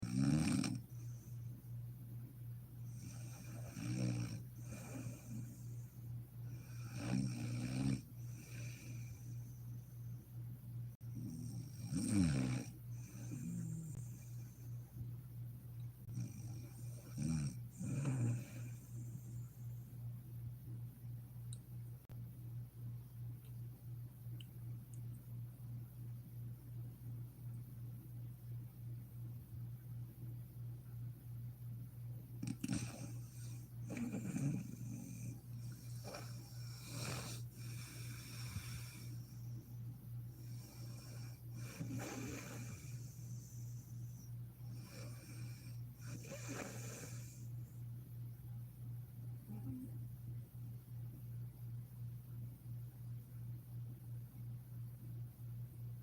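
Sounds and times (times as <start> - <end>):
woman snoring: 0.0 - 0.9, 2.9 - 5.8, 6.6 - 9.2, 11.2 - 14.4, 16.1 - 19.1, 32.4 - 39.2, 40.6 - 43.3, 44.8 - 47.5
steady low hum: 0.0 - 56.0
soft breathing: 0.8 - 1.8, 4.4 - 7.0, 8.0 - 10.4, 12.7 - 15.2, 32.6 - 47.9.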